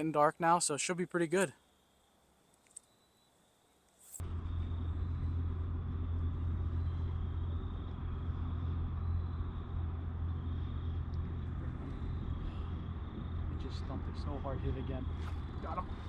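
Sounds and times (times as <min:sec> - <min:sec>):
boat motor humming: 0:04.2 - 0:16.0.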